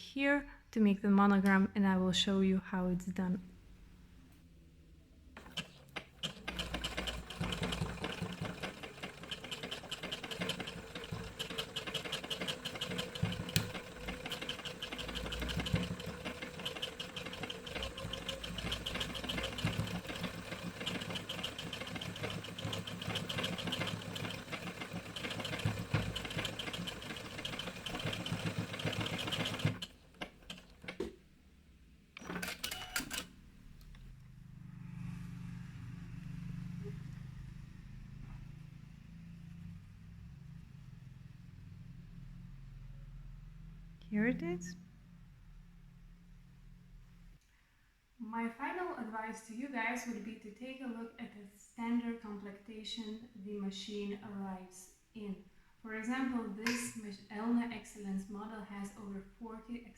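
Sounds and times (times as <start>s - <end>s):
sewing machine stitching: 5.4s - 31.2s, 32.2s - 33.3s.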